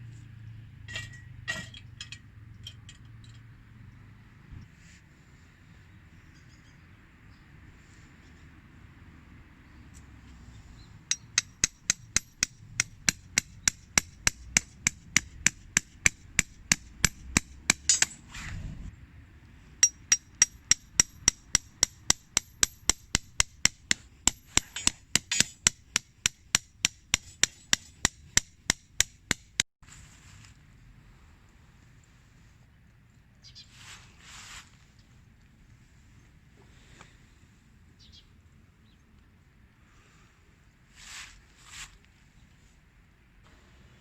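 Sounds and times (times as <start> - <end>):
hammer striking tent pegs: 11.1 - 18.3, 19.8 - 29.7.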